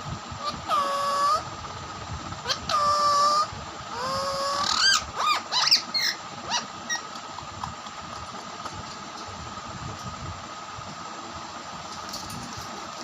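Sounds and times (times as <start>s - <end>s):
parakeets screeching: 0.4s - 1.4s, 2.4s - 7.1s.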